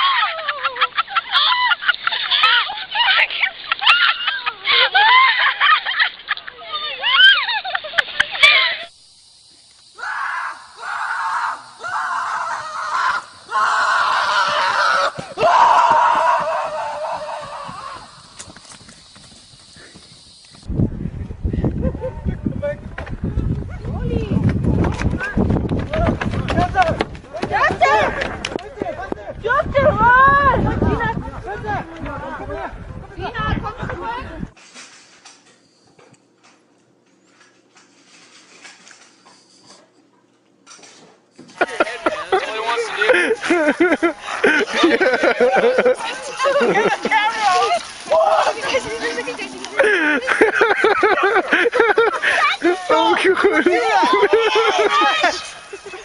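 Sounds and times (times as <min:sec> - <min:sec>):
person screaming: 0:10.0 - 0:18.1.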